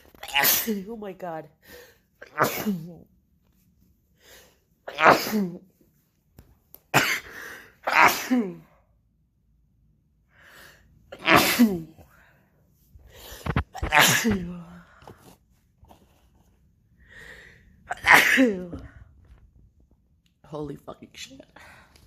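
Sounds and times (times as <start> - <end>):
woman sneezing: 0.2 - 0.9, 2.2 - 3.0, 4.8 - 5.7, 6.9 - 8.8, 11.1 - 12.0, 13.5 - 14.8, 17.9 - 18.8.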